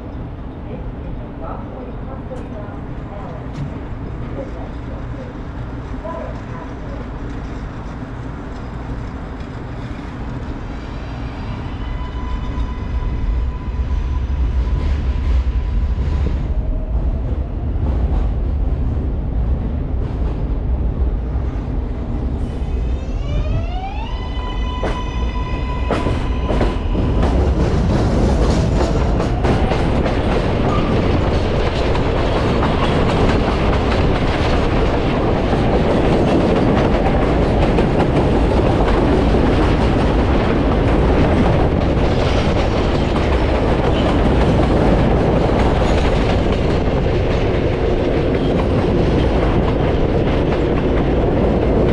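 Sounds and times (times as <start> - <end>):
train wheels clattering on rails: 24.7 - 51.9.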